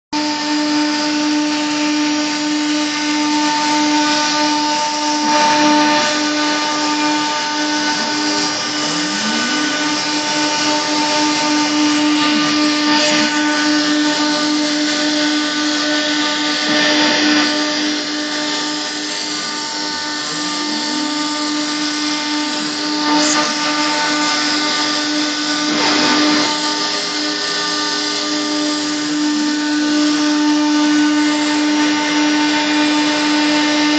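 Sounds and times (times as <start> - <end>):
router spindle whine: 0.2 - 33.9
short rising tones: 5.2 - 14.3.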